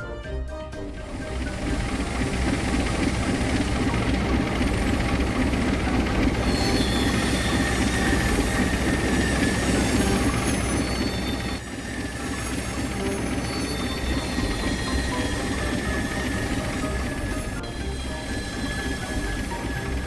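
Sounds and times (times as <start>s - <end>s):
train rumbling on rails: 0.7s - 20.0s
high wheel squeal: 0.9s - 20.0s.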